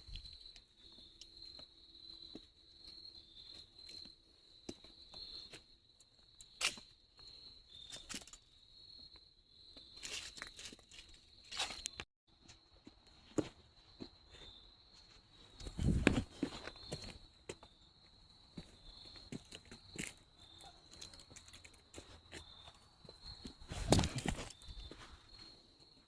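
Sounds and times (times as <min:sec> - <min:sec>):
high-pitched insect trill: 0:00.0 - 0:12.0, 0:14.4 - 0:26.0
footsteps crunching on trail: 0:09.8 - 0:26.0.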